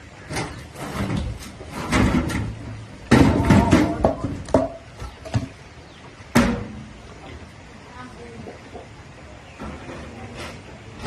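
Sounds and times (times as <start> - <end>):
sharp knocks and clatters: 0.2 - 5.6.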